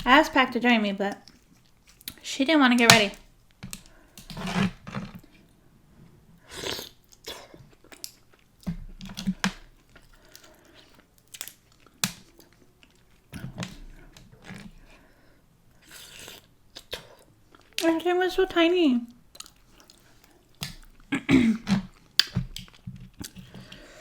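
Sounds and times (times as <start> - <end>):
person chewing food: 1.2 - 2.2, 6.4 - 17.8, 19.1 - 24.0.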